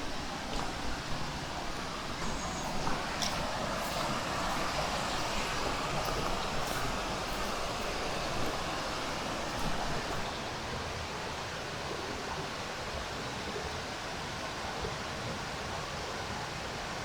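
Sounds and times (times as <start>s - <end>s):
stream flowing over rocks: 0.0s - 10.6s.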